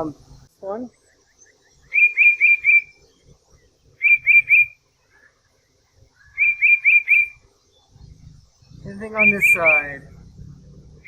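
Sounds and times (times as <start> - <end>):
songbird whistling: 1.4 - 3.1, 4.0 - 5.4, 6.1 - 7.4.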